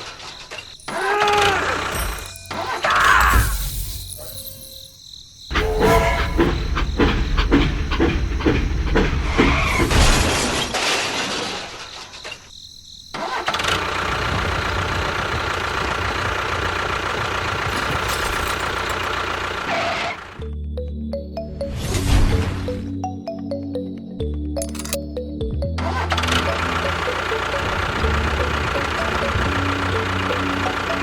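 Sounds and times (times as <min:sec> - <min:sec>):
engine running rough with knocks: 0:05.5 - 0:10.8, 0:13.2 - 0:20.4, 0:25.8 - 0:31.0.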